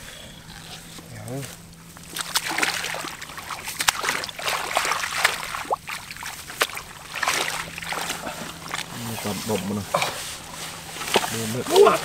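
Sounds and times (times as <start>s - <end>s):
splashing in shallow water: 1.9s - 12.0s
hands slapping water: 2.0s - 8.9s.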